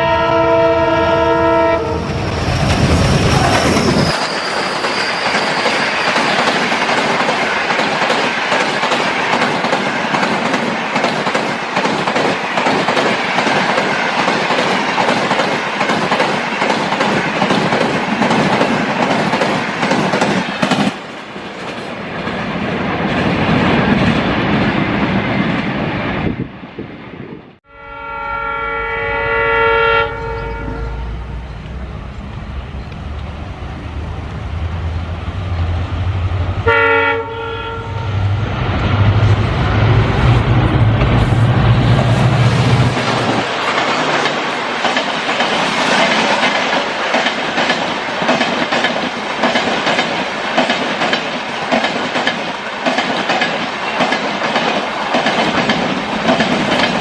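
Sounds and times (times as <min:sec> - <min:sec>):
train horn chord: 0:00.0 - 0:02.2, 0:27.6 - 0:31.4, 0:36.6 - 0:38.4
train wheels clattering over rails: 0:02.1 - 0:25.7, 0:38.8 - 0:57.0.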